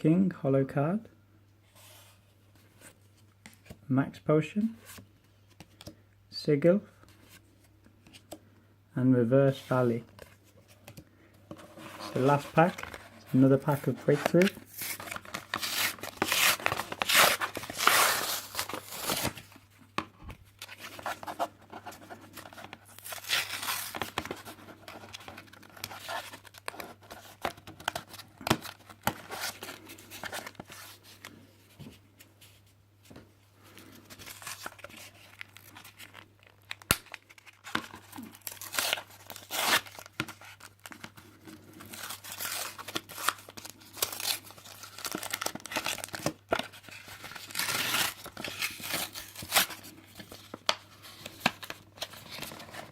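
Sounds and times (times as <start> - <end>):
packaging being torn and crinkled: 14.3 - 19.6, 22.9 - 30.6, 34.2 - 41.2, 41.8 - 52.9.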